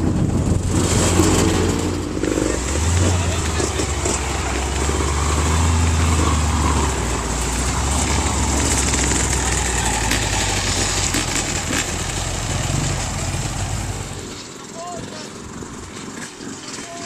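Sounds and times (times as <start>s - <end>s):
truck engine running at low revs: 0.0s - 17.0s
knocks and rattles: 0.1s - 14.7s.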